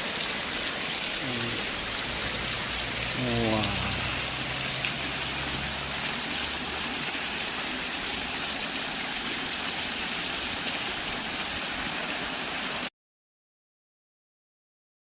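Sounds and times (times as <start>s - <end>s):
waterfall splashing into pool: 0.0s - 12.9s.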